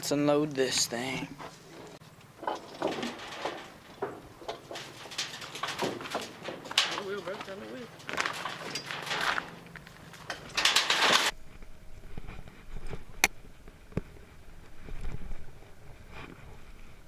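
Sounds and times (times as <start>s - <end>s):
rustling or scraping burst: 1.4s - 11.4s
clicks and knocks: 2.3s - 11.4s.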